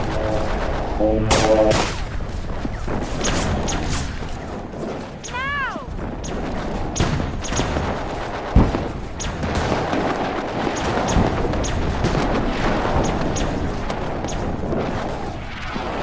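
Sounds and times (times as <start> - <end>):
laser blaster shots: 0.0 - 4.4.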